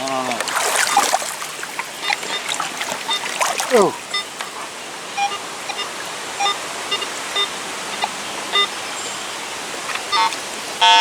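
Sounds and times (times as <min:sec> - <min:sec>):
river rushing: 0:00.0 - 0:10.8
metal detector beeps: 0:02.0 - 0:04.4, 0:05.2 - 0:08.7, 0:10.1 - 0:11.0.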